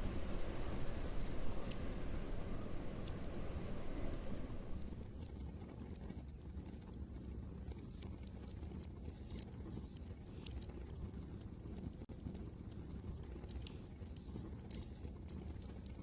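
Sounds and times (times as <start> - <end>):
low rumble: 0.0 - 5.2
wood fire crackling: 0.0 - 5.3.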